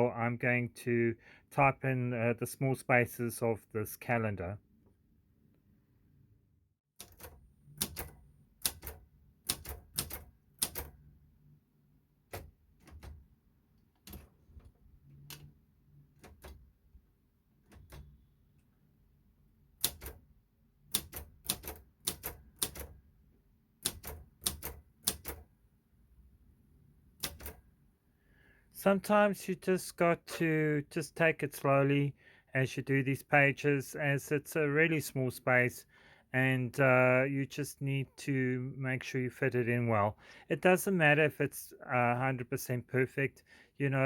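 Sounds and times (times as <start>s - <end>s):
typewriter keys striking: 7.0s - 11.0s, 19.8s - 20.2s, 20.9s - 22.9s, 23.8s - 25.4s, 27.2s - 27.6s.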